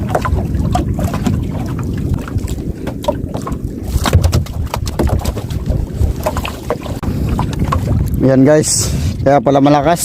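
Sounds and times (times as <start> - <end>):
water splashes: 0.0 - 9.4
wind buffeting microphone: 0.0 - 10.0
sharp knocks: 4.0 - 5.4.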